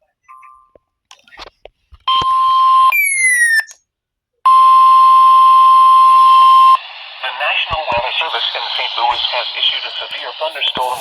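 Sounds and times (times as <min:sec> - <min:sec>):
steady warning alarm tone: 0:04.5 - 0:06.8
radio hiss: 0:05.7 - 0:11.0.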